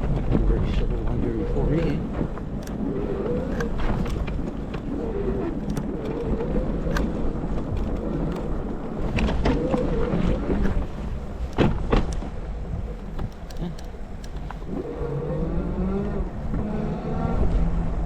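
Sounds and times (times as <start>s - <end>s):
e-bike riding through snow: 0.0s - 18.0s
wind rumbling on microphone: 0.0s - 18.0s.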